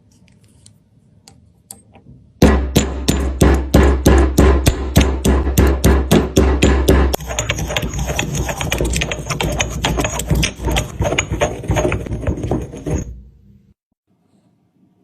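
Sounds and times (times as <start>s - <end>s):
rapid irregular clicking and tapping: 2.8s - 13.1s.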